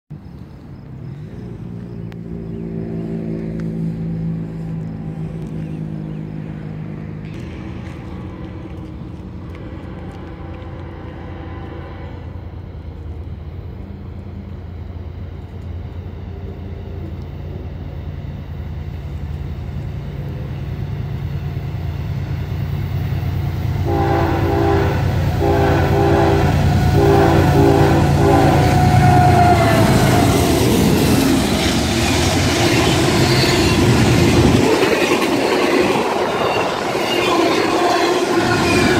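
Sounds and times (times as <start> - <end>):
diesel engine rumbling: 0.1 - 38.9
locomotive air horn: 9.5 - 12.6, 23.8 - 30.8, 37.2 - 38.9.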